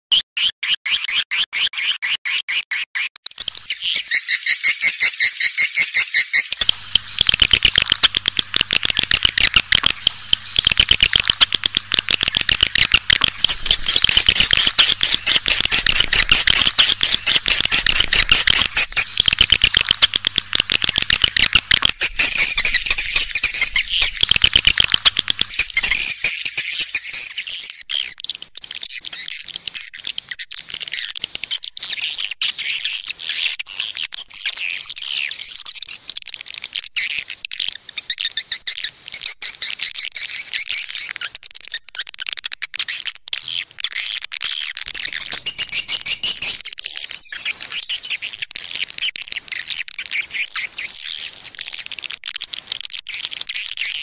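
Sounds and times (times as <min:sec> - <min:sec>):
swiftlets twittering: 0:00.1 - 0:27.1, 0:44.9 - 0:46.7.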